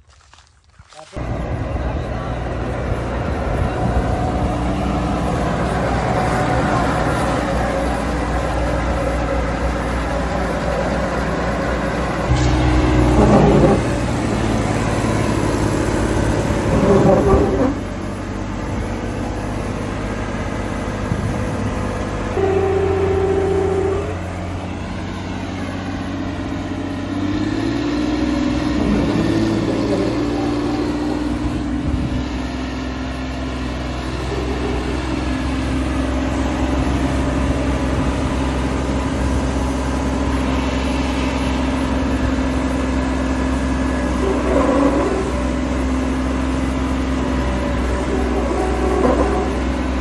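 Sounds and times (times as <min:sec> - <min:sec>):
combine harvester engine running: 0:01.2 - 0:50.0
high steady tone: 0:12.3 - 0:17.2.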